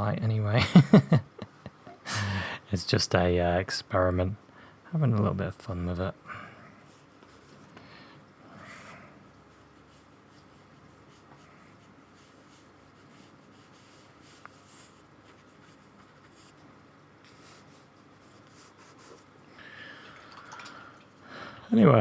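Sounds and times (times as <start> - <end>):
paintbrush strokes on paper: 9.5 - 19.3.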